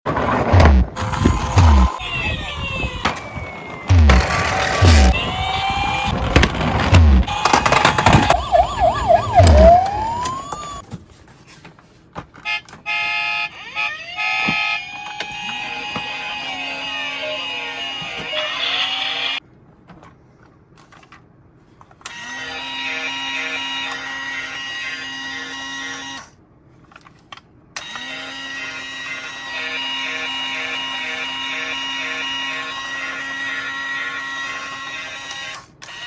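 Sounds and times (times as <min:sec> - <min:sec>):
sliding tones: 0:00.1 - 0:10.8.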